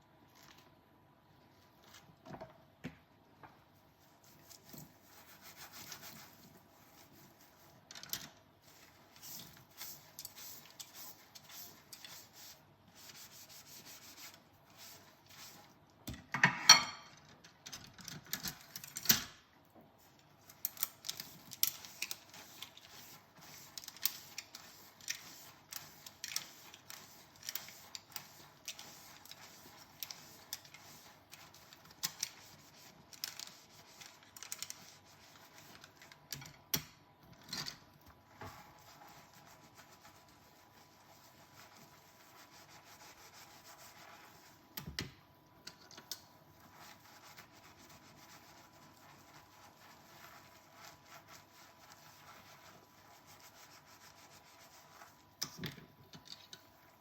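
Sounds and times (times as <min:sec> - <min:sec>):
dishes clinking: 0:16.4 - 0:17.2
sponge scrubbing dishes: 0:37.8 - 0:44.8, 0:46.3 - 0:55.5.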